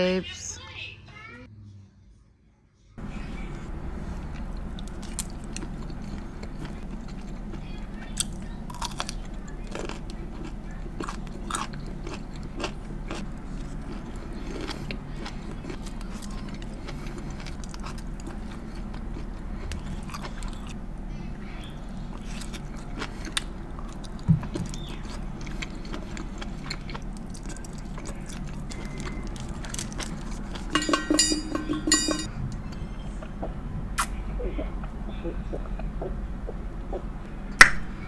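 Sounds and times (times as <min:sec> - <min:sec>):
steady low hum: 0:03.0 - 0:38.0
person biting and chewing: 0:04.3 - 0:20.8.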